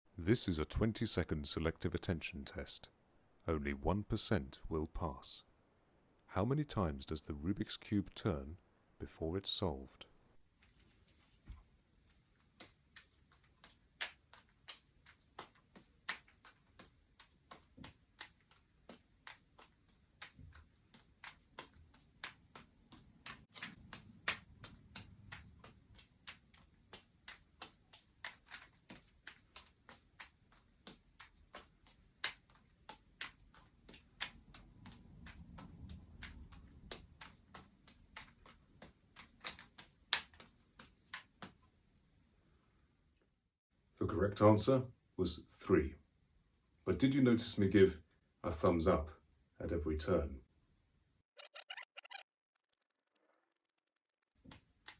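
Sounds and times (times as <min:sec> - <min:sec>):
juggling balls slapping hands: 0:11.5 - 0:41.7, 0:54.3 - 0:54.9.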